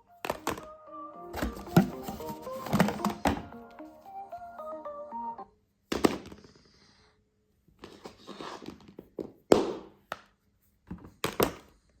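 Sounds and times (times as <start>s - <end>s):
handling knocks and rustles: 1.3s - 3.5s.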